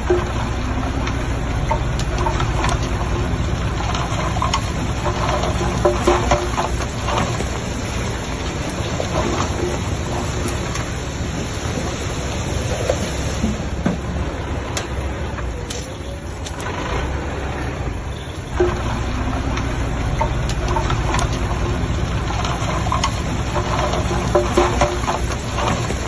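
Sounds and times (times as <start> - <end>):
clicks and knocks: 0.0 - 12.0, 18.5 - 26.0
heavy machine engine running: 0.0 - 26.0.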